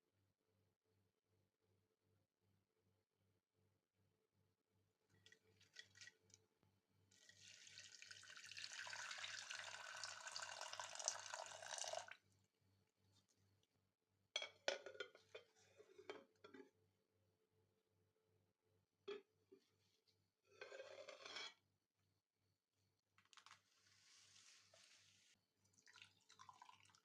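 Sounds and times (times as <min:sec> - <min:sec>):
water pouring: 0:07.1 - 0:12.2, 0:25.7 - 0:27.0.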